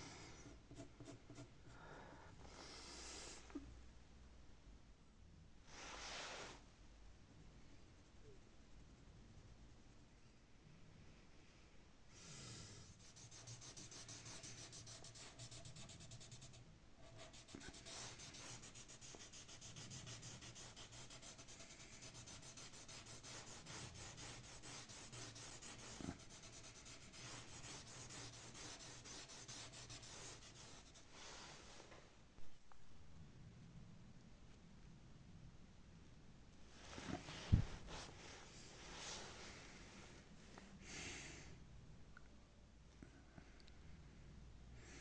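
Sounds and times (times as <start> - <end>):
pencil scratching on paper: 0.3 - 1.6, 12.8 - 31.2.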